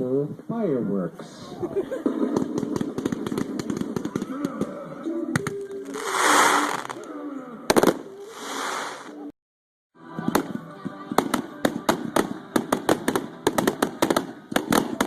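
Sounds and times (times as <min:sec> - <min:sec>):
fireworks popping and crackling: 0:02.1 - 0:04.3, 0:05.8 - 0:07.0, 0:07.7 - 0:09.2, 0:11.2 - 0:15.0
rushing hiss of fireworks: 0:05.8 - 0:07.0, 0:07.8 - 0:09.3.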